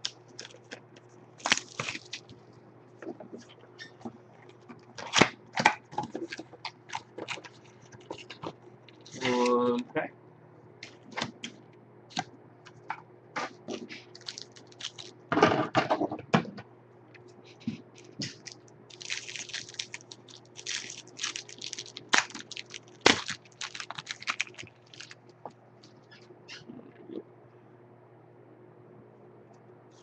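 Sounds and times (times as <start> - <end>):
wrapper and cards crinkling: 0.0 - 0.8, 1.4 - 2.4, 13.7 - 15.2, 18.0 - 26.0
card pack wrapper tearing: 1.4 - 2.3, 14.0 - 15.1, 18.0 - 25.2.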